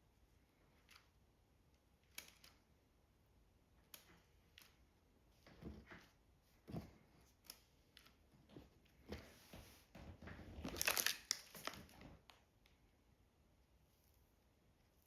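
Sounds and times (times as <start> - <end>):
small handling clicks: 2.0 - 2.7
crinkling tearing rustle: 10.6 - 12.2.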